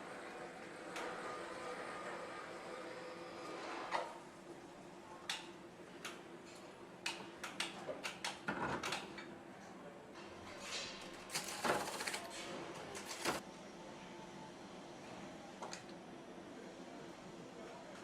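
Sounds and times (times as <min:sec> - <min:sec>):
steady factory hum: 0:09.1 - 0:18.0.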